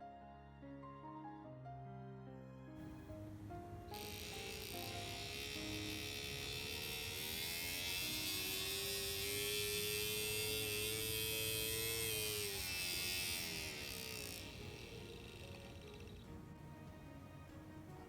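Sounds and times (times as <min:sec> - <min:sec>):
model train motor whining: 0:02.8 - 0:16.7.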